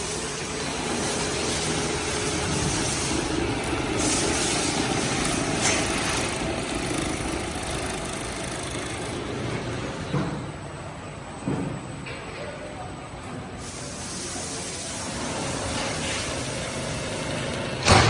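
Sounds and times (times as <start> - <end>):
machinery clatter: 0.0 - 10.7, 15.0 - 18.0
low machine hum: 0.0 - 13.4.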